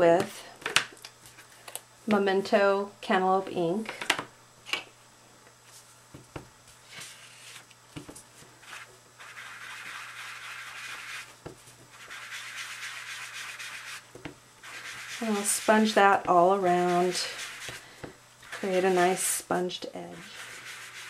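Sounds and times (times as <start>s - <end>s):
ink sponge rubbing on paper: 8.6s - 11.3s, 11.9s - 14.0s, 14.6s - 17.8s, 18.4s - 19.4s, 20.2s - 21.0s.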